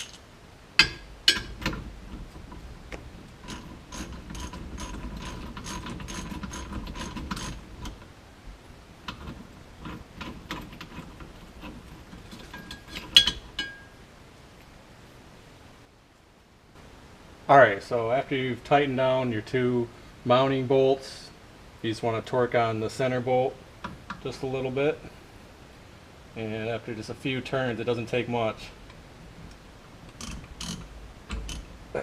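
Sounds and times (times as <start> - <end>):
sharp metal clanks: 0.8 - 1.8, 12.2 - 14.0
socket ratchet clicking: 30.1 - 31.7.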